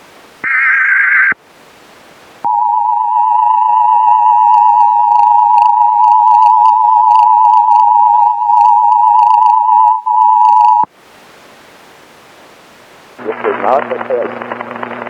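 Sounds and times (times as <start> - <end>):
low static hiss: 0.0 - 4.2, 10.8 - 15.0
warbling emergency alert tone: 0.4 - 1.4, 2.5 - 10.9
faint gliding chirps and clicks: 13.4 - 15.0.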